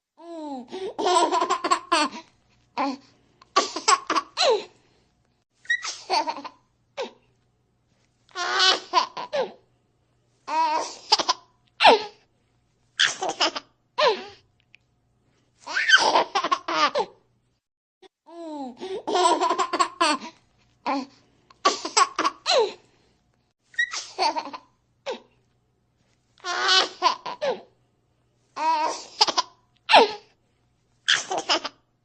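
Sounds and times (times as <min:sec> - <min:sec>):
baby giggling: 0:15.7 - 0:17.2.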